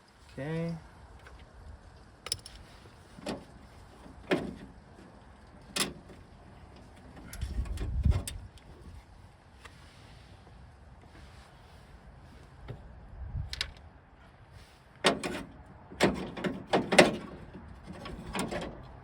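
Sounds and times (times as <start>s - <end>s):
metal clicks and clanks: 2.2s - 2.6s, 5.5s - 8.4s, 15.0s - 19.0s.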